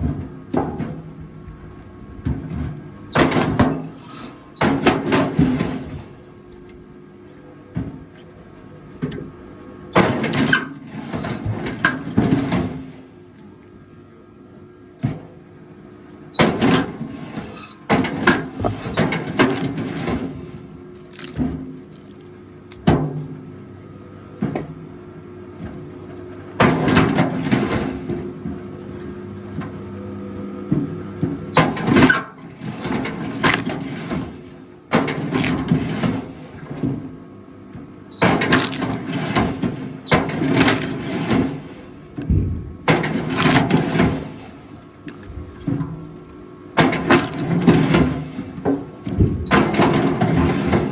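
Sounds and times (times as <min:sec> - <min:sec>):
log splitter humming: 0:42.0 - 0:43.9.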